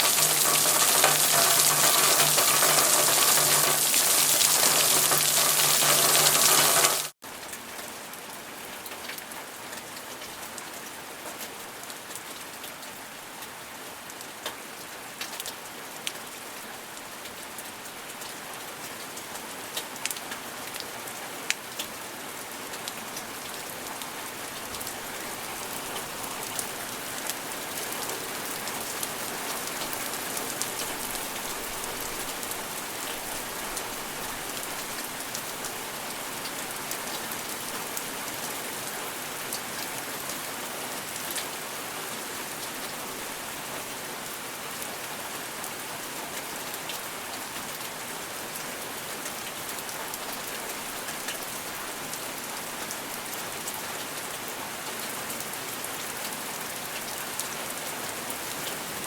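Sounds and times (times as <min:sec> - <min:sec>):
individual raindrop taps: 0:00.0 - 0:07.1
rain pattering: 0:00.0 - 0:12.8, 0:14.1 - 0:43.9.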